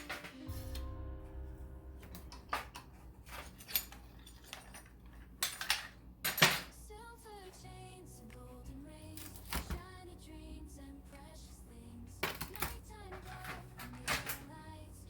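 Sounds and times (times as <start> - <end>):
metallic clinks and knocks: 2.0 - 6.7.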